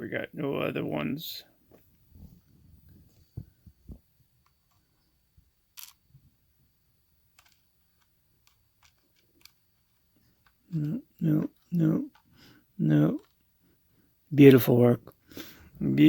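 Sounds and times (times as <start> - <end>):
small metal parts clicking: 5.7 - 6.0, 7.3 - 12.4.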